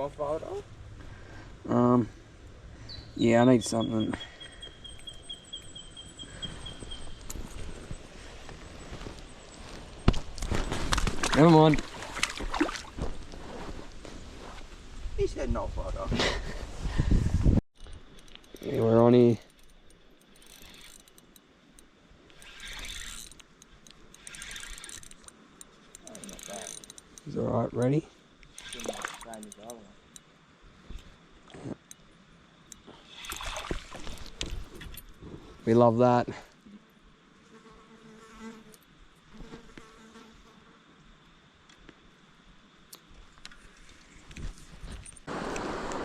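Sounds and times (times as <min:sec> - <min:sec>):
faint outdoor ambience: 0:00.0 - 0:46.0
rustling: 0:07.2 - 0:15.1
fishing reel clicking: 0:17.8 - 0:27.3, 0:28.4 - 0:29.8
insect buzzing: 0:17.8 - 0:27.4, 0:28.4 - 0:30.2, 0:36.7 - 0:41.0.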